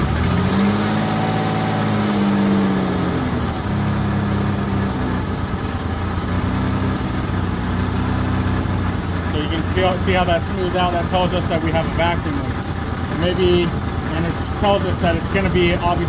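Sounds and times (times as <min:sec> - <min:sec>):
car engine idling rough: 0:00.0 - 0:16.0
aerosol spray hissing: 0:05.6 - 0:05.9.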